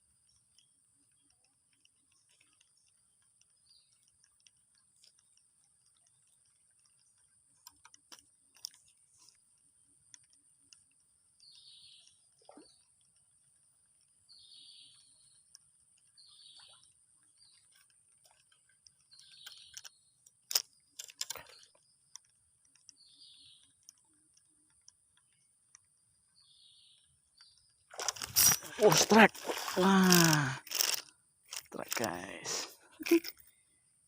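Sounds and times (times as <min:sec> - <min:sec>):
bird chirping: 0:11.4 - 0:12.9, 0:14.3 - 0:15.5, 0:16.1 - 0:17.8, 0:19.0 - 0:20.2, 0:22.8 - 0:23.8, 0:26.2 - 0:30.6.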